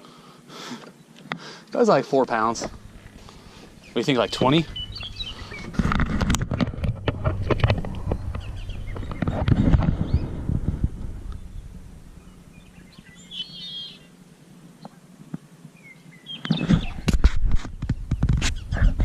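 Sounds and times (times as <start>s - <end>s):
rumbling and knocking handling noise: 2.4s - 13.6s, 16.8s - 19.0s
bird chirping: 2.4s - 14.9s, 15.8s - 17.0s.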